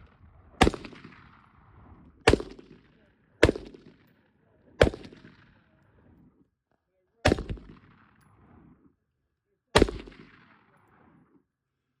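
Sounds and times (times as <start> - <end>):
gunshots with echo: 0.6 - 1.4, 2.2 - 4.0, 4.8 - 5.5, 7.3 - 8.1, 9.8 - 10.7.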